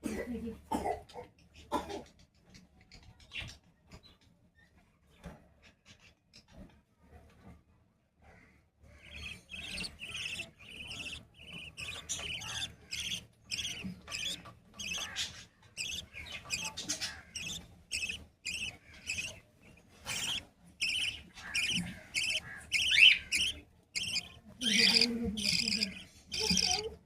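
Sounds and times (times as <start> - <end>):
budgerigar chicks chirping: 8.9 - 27.0.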